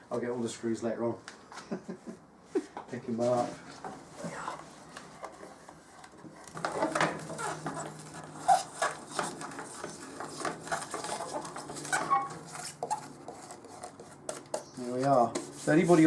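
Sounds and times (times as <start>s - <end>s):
rustling: 3.2s - 16.0s.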